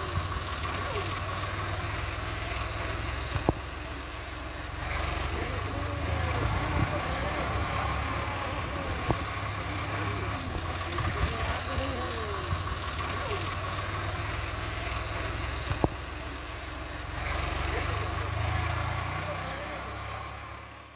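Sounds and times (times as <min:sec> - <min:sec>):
tractor diesel engine running: 0:00.0 - 0:20.9.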